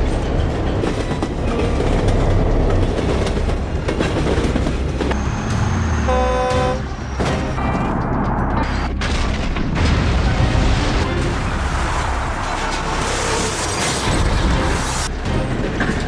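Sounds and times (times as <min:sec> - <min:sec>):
train colliding with truck: 0:08.7 - 0:16.0.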